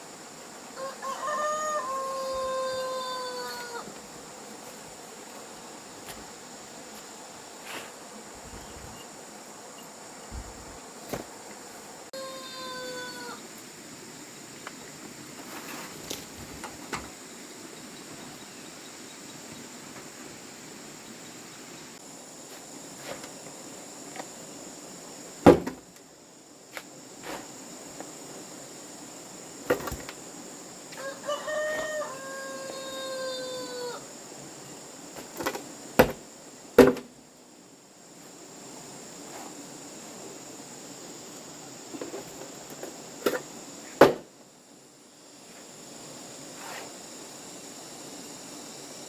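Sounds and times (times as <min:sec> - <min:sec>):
rooster crowing: 0:00.7 - 0:03.9, 0:12.1 - 0:13.4, 0:30.9 - 0:34.1.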